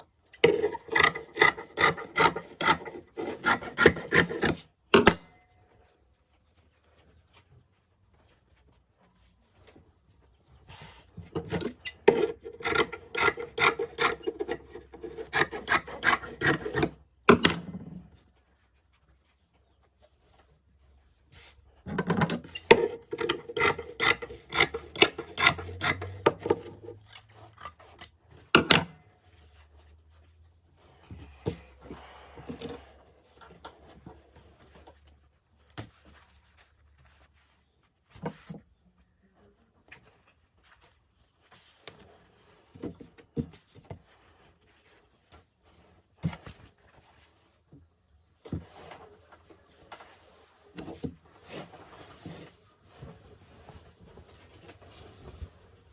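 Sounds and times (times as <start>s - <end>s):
fabric cutting strokes: 0.4s - 4.6s, 11.6s - 17.0s, 22.7s - 27.9s.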